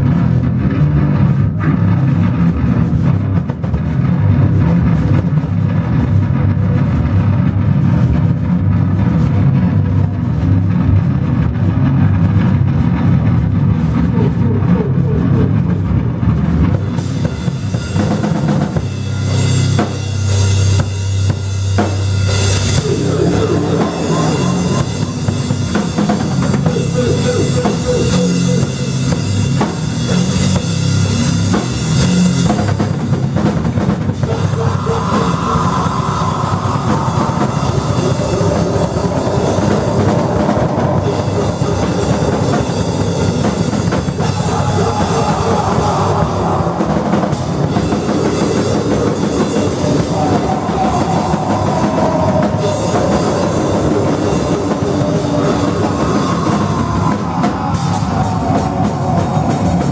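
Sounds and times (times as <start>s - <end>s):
bass line: 0.0s - 59.9s
drum kit: 0.0s - 59.9s
high droning part: 13.8s - 59.9s
rock band playing: 16.4s - 59.9s.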